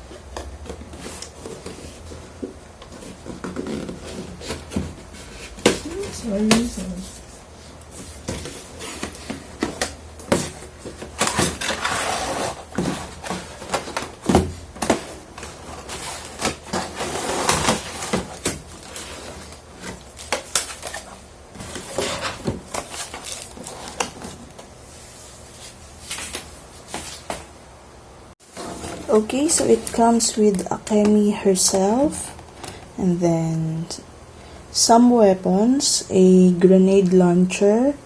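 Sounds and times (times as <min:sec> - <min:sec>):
packaging rustling: 0:00.2 - 0:27.5, 0:28.4 - 0:30.9.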